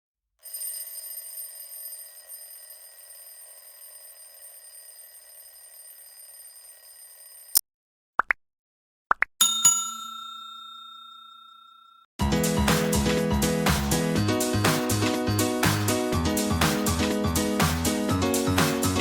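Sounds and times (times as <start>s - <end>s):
electronic ringing tone: 0.4s - 7.6s.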